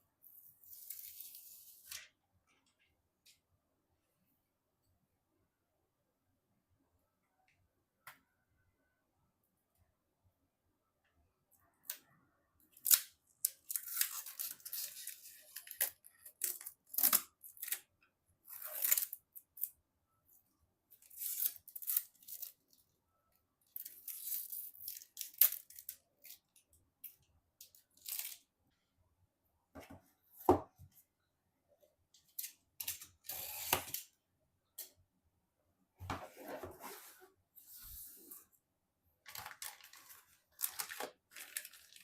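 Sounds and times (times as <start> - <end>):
packaging tearing and rustling: 39.3 - 42.0.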